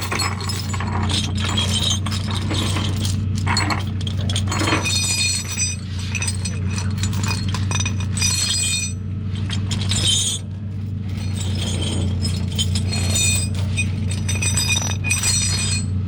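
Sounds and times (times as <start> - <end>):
low engine hum: 0.0 - 16.0
metallic clinking and rattling: 0.0 - 16.0.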